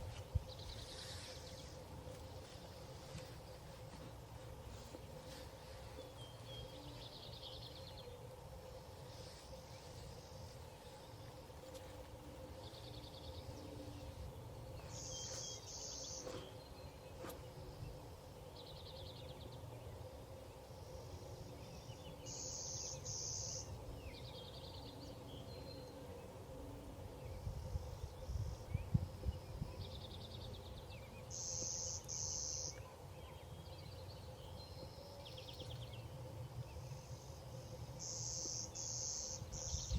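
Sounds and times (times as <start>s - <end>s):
wind rumble on microphone: 0.0s - 2.0s, 27.2s - 30.6s, 39.4s - 39.9s
insects buzzing trills: 0.0s - 39.9s.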